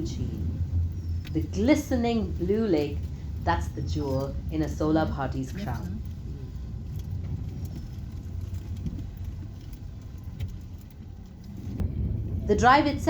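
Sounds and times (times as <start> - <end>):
car engine rumble: 0.0 - 13.0
tyres on road: 0.0 - 13.0.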